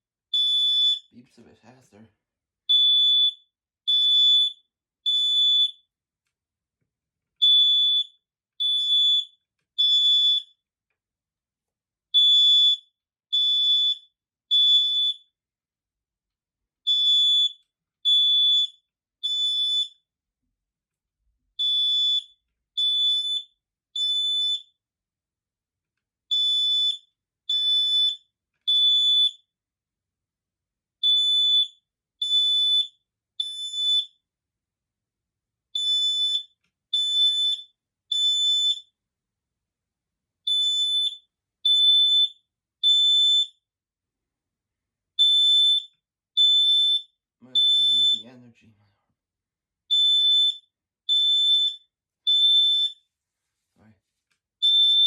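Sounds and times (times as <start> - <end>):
smoke alarm beeping: 0.3 - 1.1, 2.7 - 5.9, 7.4 - 10.6, 12.1 - 15.4, 16.8 - 20.0, 21.6 - 24.8, 26.3 - 29.5, 31.0 - 34.2, 35.7 - 39.0, 40.4 - 43.7, 45.2 - 48.4, 49.8 - 53.1, 54.6 - 55.0.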